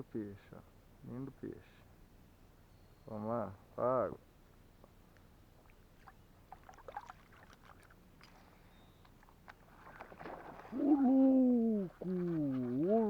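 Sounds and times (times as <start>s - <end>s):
water splashes and drips: 5.6s - 13.0s.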